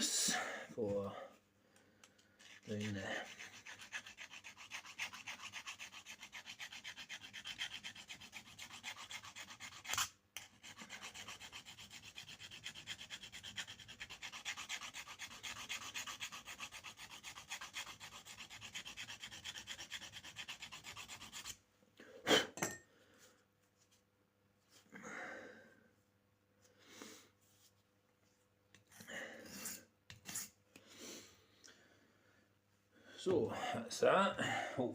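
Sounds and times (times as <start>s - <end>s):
knife blade being sharpened: 29.5s - 30.6s.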